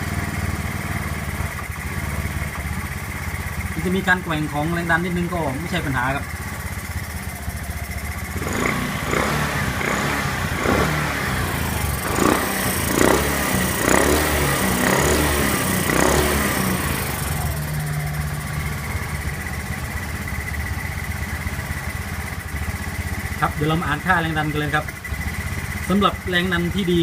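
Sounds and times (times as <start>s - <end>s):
scooter engine revving and idling: 0.0s - 27.0s.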